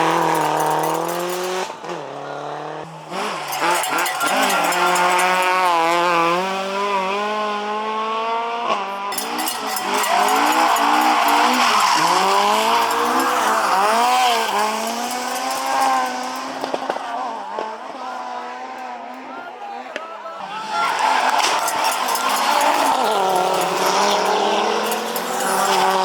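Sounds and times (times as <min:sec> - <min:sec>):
sharp exhaust pops: 0:00.0 - 0:02.0, 0:03.0 - 0:06.6, 0:09.1 - 0:17.7, 0:20.8 - 0:26.0
tyres squealing: 0:00.0 - 0:06.7, 0:09.1 - 0:18.2, 0:20.3 - 0:26.0
rally car engine revving: 0:00.0 - 0:19.2, 0:20.7 - 0:26.0.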